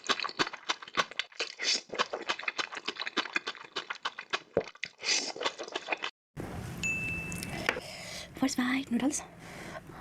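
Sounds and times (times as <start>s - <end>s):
slurping noodles: 0.0s - 6.1s
wet chewing and smacking: 0.0s - 6.1s.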